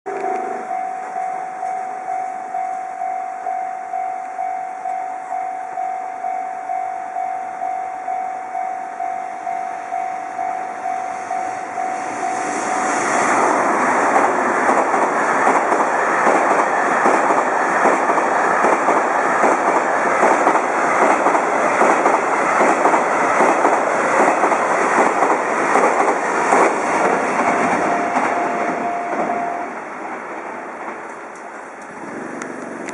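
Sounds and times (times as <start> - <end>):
level crossing warning bell: 0.1 - 13.3, 27.3 - 29.8
train wheels clattering over rail joints: 13.3 - 28.4.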